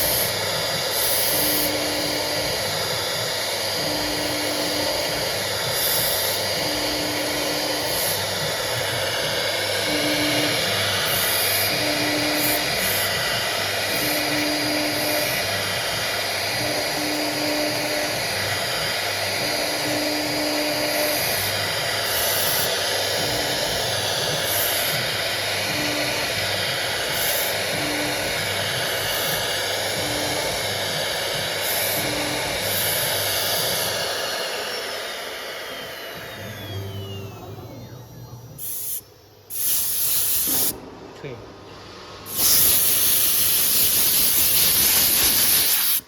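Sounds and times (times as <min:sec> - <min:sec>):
router spindle cutting noise: 0:00.0 - 0:41.4
low motor hum: 0:22.7 - 0:39.5.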